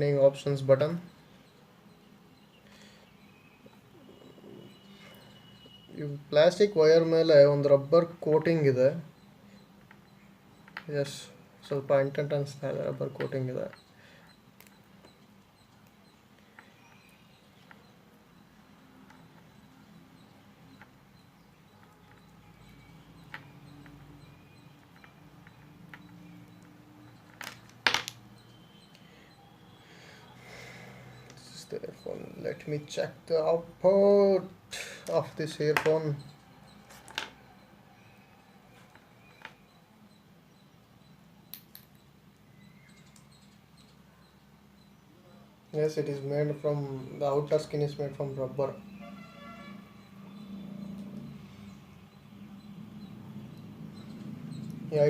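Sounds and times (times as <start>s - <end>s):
earphones clicking and handling: 23.2s - 29.1s.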